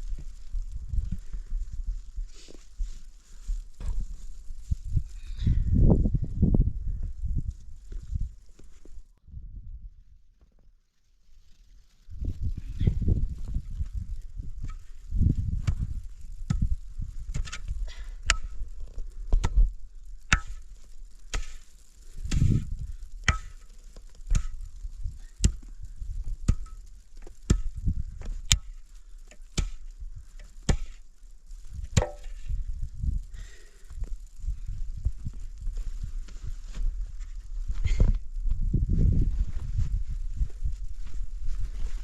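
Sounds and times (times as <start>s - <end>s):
hand tool chopping strikes: 20.3s - 20.6s, 23.3s - 23.6s, 32.0s - 32.3s.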